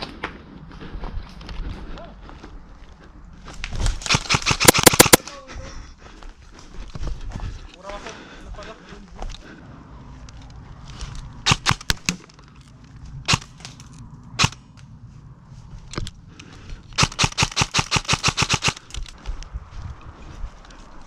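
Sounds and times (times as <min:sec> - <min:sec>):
airsoft guns firing: 0:04.0 - 0:05.3, 0:17.0 - 0:18.9.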